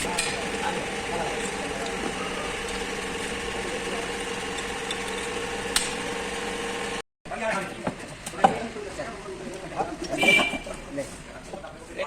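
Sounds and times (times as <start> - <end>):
motor humming: 0.0 - 7.0.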